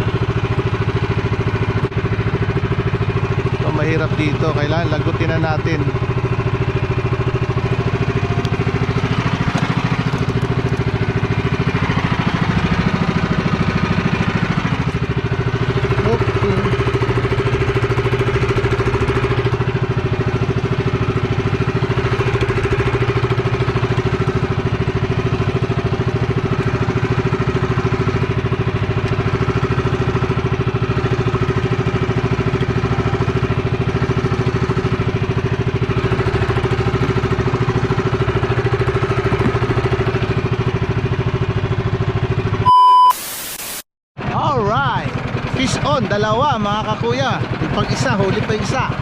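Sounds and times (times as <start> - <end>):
boat engine running: 0.0 - 42.6, 44.2 - 49.0
short beep: 42.6 - 43.8
harsh burst of noise: 43.1 - 43.8.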